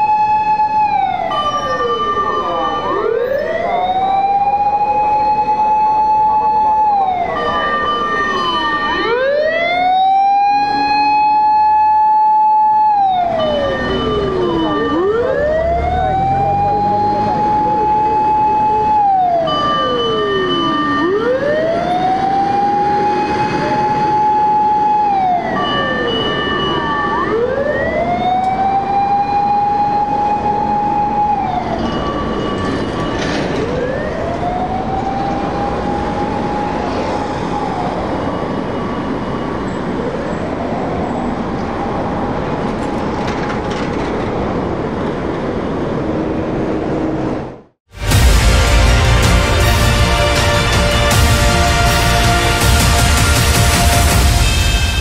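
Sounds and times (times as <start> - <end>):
fire engine siren wailing: 0.0 - 43.8, 47.9 - 55.0
truck engine rumbling: 42.2 - 55.0.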